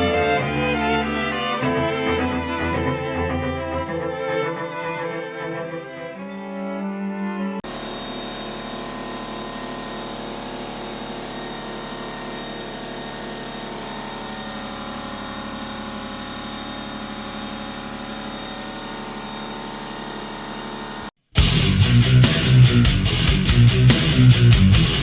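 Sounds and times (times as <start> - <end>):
motor-driven shop tool running: 7.6 - 21.2.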